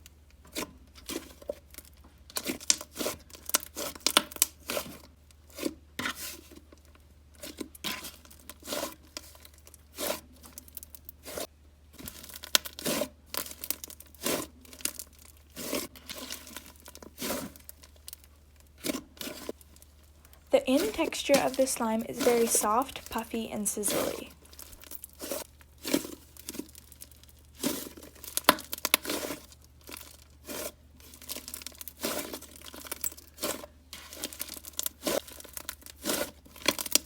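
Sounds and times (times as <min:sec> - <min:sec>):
slime squished by hand: 0:12.0 - 0:20.2, 0:23.9 - 0:37.0.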